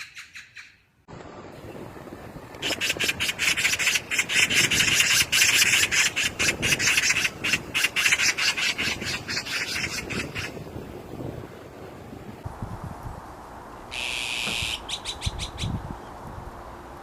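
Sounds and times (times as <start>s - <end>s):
magpie chattering: 13.9s - 15.7s.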